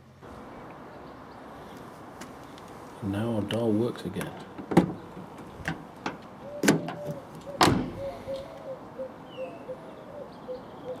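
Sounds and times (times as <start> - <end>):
car door latch clacking: 4.6 - 8.0.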